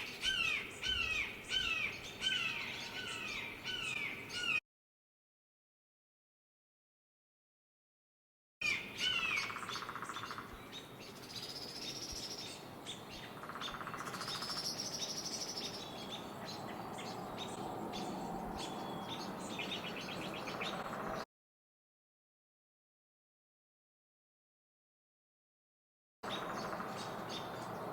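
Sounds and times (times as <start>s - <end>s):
bird trill: 0.0s - 4.6s, 8.6s - 21.2s, 26.2s - 27.9s
small birds chirping: 0.0s - 4.6s, 8.6s - 21.2s, 26.2s - 27.9s.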